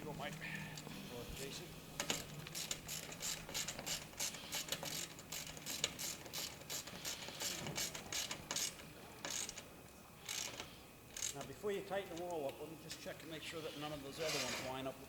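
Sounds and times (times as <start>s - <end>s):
ratchet wrench clicking: 2.0s - 9.6s, 10.2s - 11.5s.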